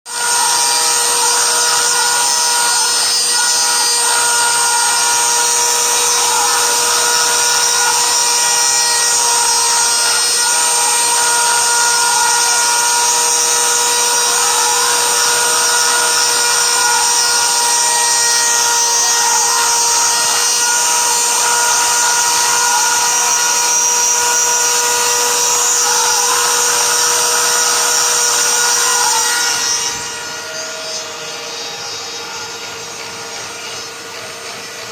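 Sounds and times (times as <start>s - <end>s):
spindle motor high whine: 0.1s - 34.9s
stepper motors whining: 0.1s - 34.9s.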